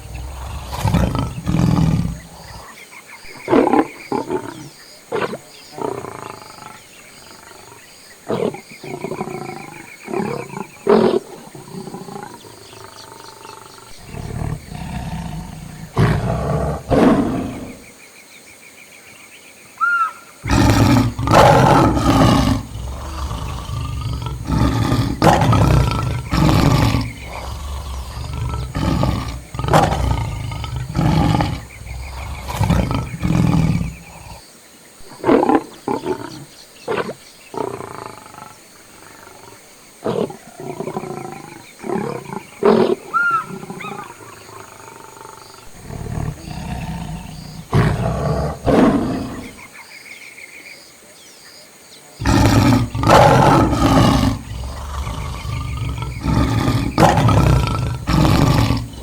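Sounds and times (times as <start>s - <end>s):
lions roaring and growling: 0.0s - 2.7s, 8.3s - 17.8s, 20.4s - 34.4s, 40.0s - 49.6s, 52.2s - 59.0s
faint bird chirps: 17.5s - 21.5s, 40.4s - 47.7s.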